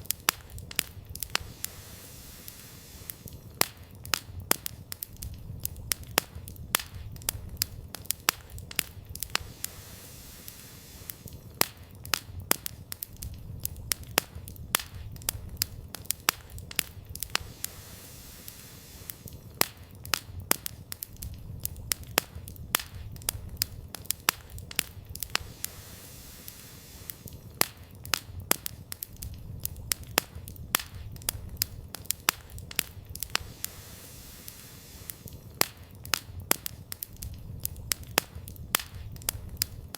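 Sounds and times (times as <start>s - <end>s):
firewood crackling and popping: 0.0s - 39.9s
low rumble of fire: 0.0s - 39.9s.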